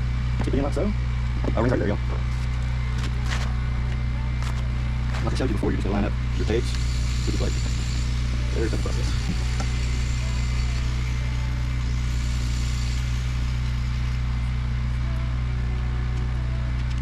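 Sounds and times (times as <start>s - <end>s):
motor droning: 0.0s - 17.0s.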